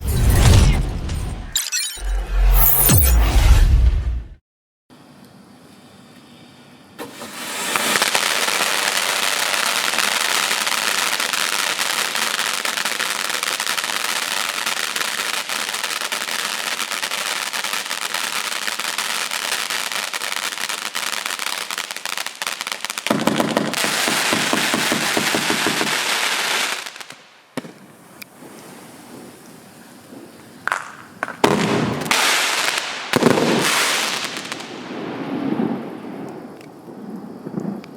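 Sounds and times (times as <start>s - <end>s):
fireworks bangs and crackling: 7.0s - 29.5s, 30.1s - 37.9s.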